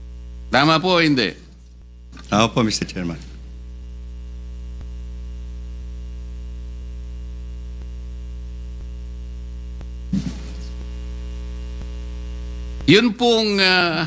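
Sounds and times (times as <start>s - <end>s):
electrical mains hum: 0.0s - 14.0s
faint ticks: 4.7s - 5.0s, 7.7s - 8.0s, 9.8s - 10.0s, 11.8s - 12.1s.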